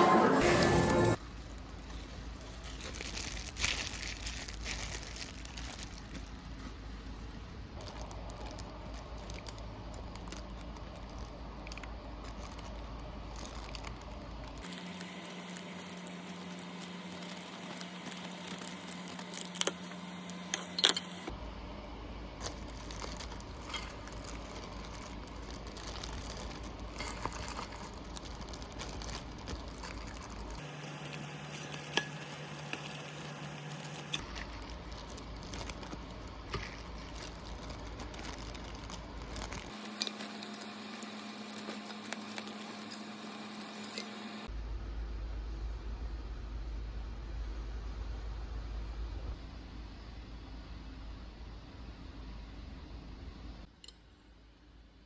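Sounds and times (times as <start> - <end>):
soft crinkling and rustling: 1.2 - 20.7, 22.4 - 44.2.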